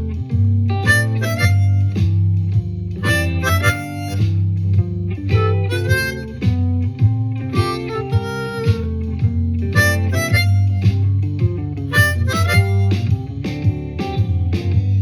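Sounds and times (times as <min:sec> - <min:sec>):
steady bass line: 0:00.0 - 0:13.3
guitar: 0:00.0 - 0:15.0
blues harmonica licks: 0:00.8 - 0:02.1, 0:03.0 - 0:04.4, 0:05.3 - 0:06.7, 0:07.5 - 0:09.0, 0:09.7 - 0:11.1, 0:11.9 - 0:13.2.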